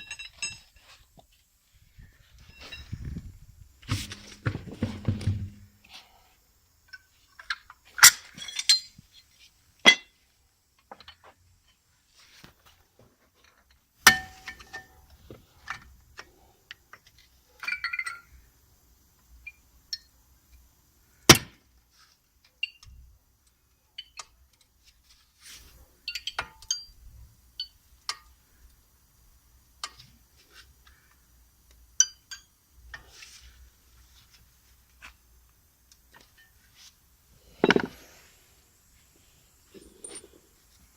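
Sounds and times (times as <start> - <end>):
metal tools clinking and knocking: 0.0 - 0.8, 37.6 - 38.0, 39.8 - 40.5.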